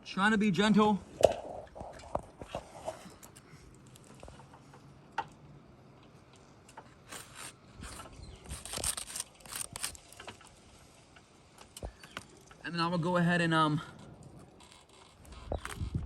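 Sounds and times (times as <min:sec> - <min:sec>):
roof shingles being pried up: 0:06.9 - 0:10.6.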